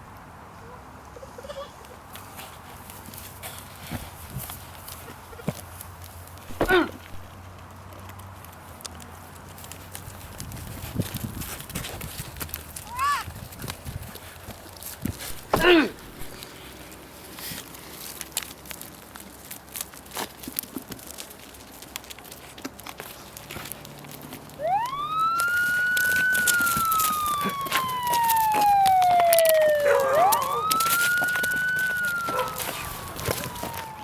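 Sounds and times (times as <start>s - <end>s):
police siren wailing: 15.3s - 16.4s, 24.5s - 34.0s.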